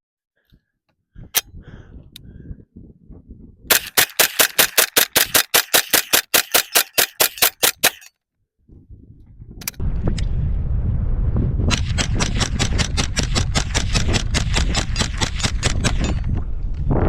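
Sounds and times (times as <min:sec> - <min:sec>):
rifle shots: 0:03.7 - 0:08.1, 0:11.7 - 0:16.2
sharp clicks: 0:03.7 - 0:08.1.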